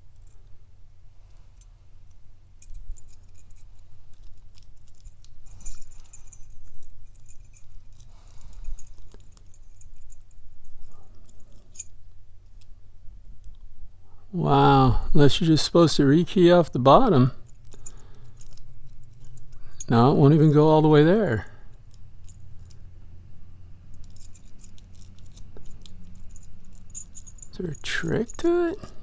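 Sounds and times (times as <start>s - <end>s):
padlock clicking and rattling: 1.6s - 13.7s, 17.4s - 23.0s, 23.8s - 29.0s.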